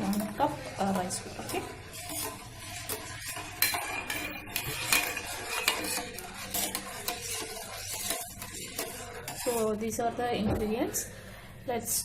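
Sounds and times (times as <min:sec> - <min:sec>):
metal spoon clinking in pot: 0:01.5 - 0:09.6.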